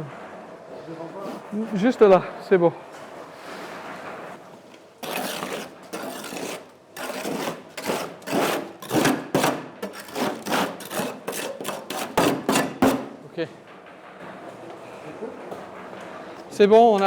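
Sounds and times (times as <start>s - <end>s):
rough scraping strokes: 0.0s - 13.2s.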